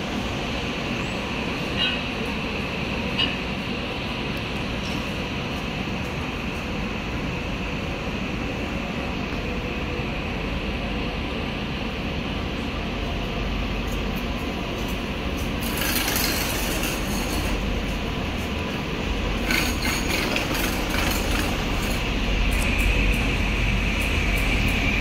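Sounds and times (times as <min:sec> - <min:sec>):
train rumbling: 0:00.0 - 0:25.0
wheels clattering on rails: 0:13.6 - 0:25.0.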